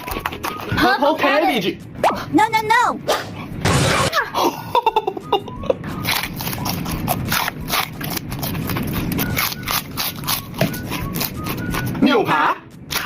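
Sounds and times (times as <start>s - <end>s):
person chewing crunchy food: 5.9s - 12.0s.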